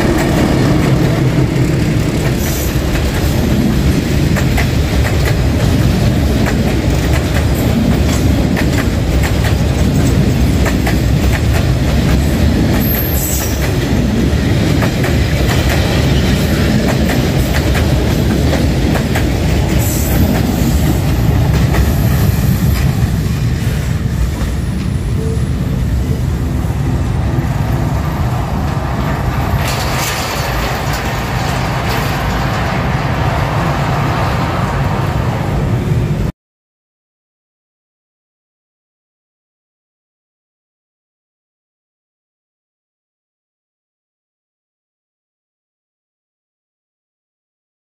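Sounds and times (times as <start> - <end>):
train rumbling along track: 0.0 - 36.3
wheels clicking over rail joints: 28.6 - 33.6.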